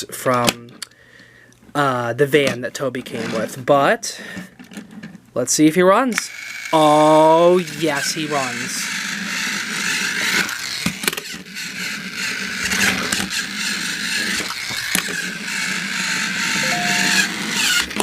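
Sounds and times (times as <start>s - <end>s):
toy train motor whirring: 6.1s - 18.0s
short steady tone: 16.6s - 17.4s.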